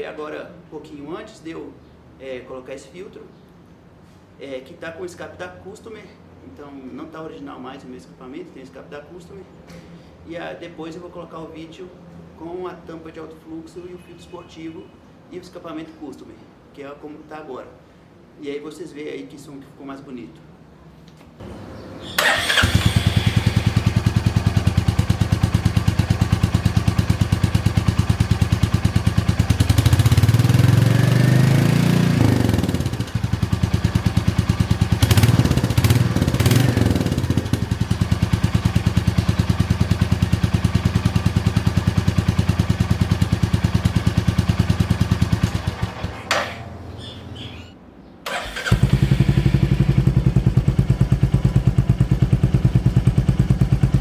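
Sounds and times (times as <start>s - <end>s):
motorcycle engine idling and revving: 21.4s - 47.6s, 48.3s - 54.0s.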